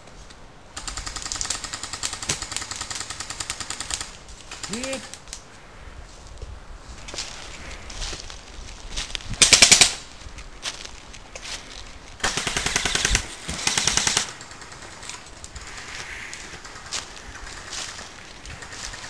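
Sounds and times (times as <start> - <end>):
airsoft gun firing full auto: 9.4 - 10.0, 12.2 - 15.9.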